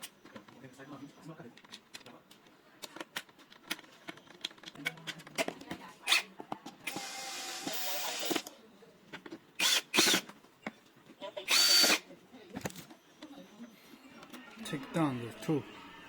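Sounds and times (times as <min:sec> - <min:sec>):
small parts clicking and tapping: 0:01.6 - 0:05.7
electric screwdriver running: 0:06.9 - 0:08.5, 0:11.5 - 0:12.0.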